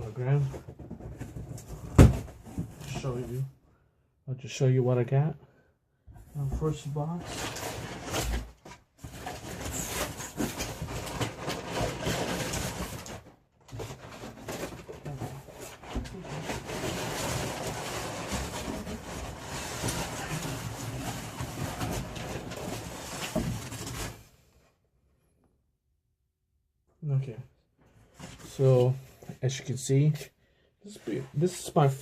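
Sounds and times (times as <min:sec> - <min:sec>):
cardboard box rustling: 0:07.3 - 0:24.2.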